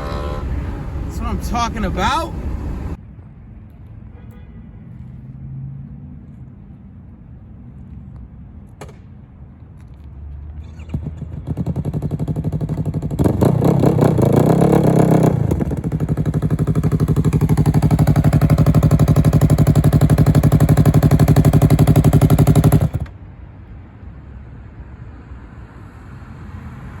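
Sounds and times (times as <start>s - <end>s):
motorcycle engine revving: 0.0s - 3.0s, 10.7s - 23.1s.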